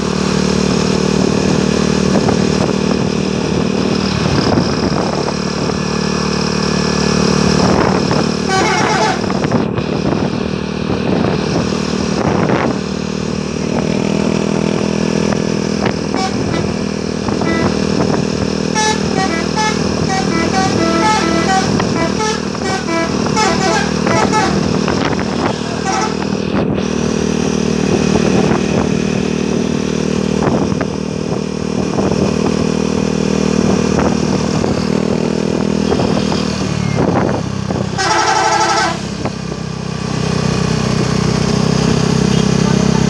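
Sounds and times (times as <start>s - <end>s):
engines and road traffic: 0.0s - 43.0s
multi-tone bus horn: 7.6s - 10.4s, 13.7s - 26.8s, 34.7s - 39.3s, 42.1s - 43.0s.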